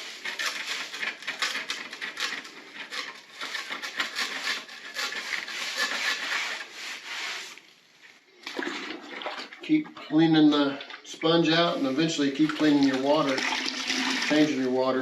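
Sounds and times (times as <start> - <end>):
grout scraping on tile floor: 0.0 - 9.5.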